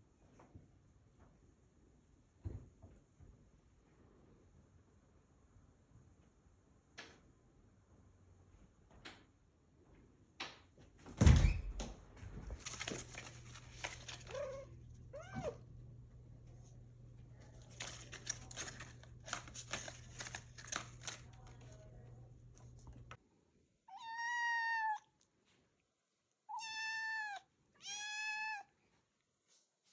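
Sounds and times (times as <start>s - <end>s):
low steady hum: 11.0s - 23.9s
kitten meowing: 23.9s - 25.1s, 26.5s - 28.7s.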